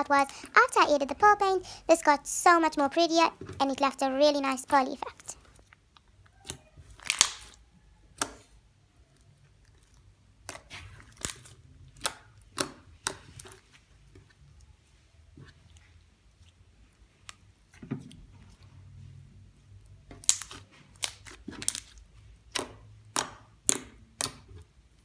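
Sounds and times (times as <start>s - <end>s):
slime squished by hand: 5.1s - 18.9s, 19.8s - 25.0s.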